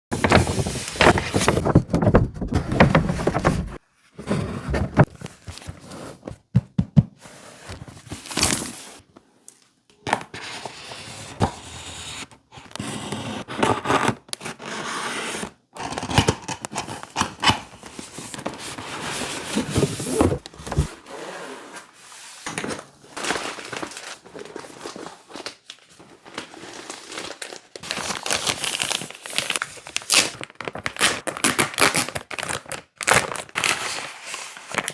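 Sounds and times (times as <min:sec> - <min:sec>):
paper and plastic tearing: 0:26.4 - 0:34.0.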